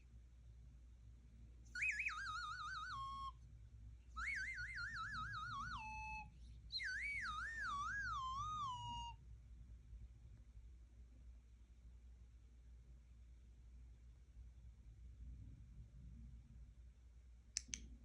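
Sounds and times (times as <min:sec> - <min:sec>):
warbling whistle-like tones: 0:01.7 - 0:03.4, 0:04.2 - 0:09.2.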